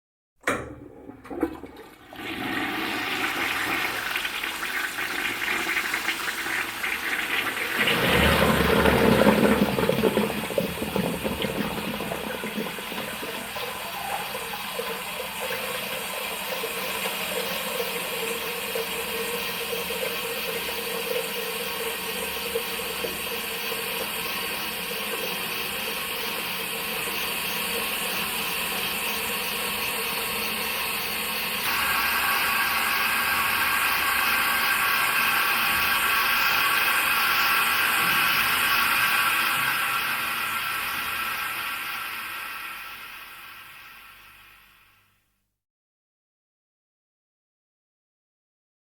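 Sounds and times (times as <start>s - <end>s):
toilet handle clicks: 0.4s - 1.6s
toilet water rushing: 0.4s - 44.8s.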